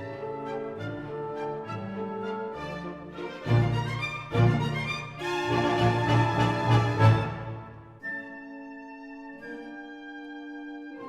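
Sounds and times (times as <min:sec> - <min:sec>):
orchestral music with strings: 0:00.0 - 0:11.0.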